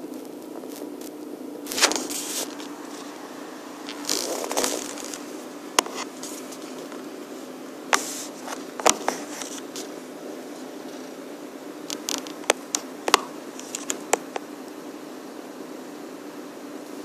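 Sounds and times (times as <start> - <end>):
scraping crackling rustles: 0.0 - 14.9
steady low hum: 0.0 - 17.0
sharp clicks: 11.9 - 14.5.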